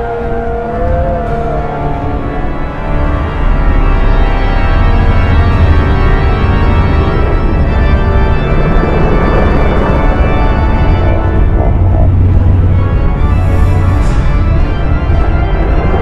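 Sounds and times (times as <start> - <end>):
deep low drone: 0.0 - 16.0
organ chords: 0.0 - 16.0.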